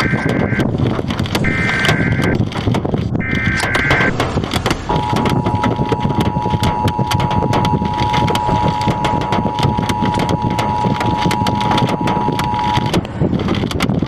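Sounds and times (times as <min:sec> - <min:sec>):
harsh two-tone alarm: 0:04.9 - 0:13.0.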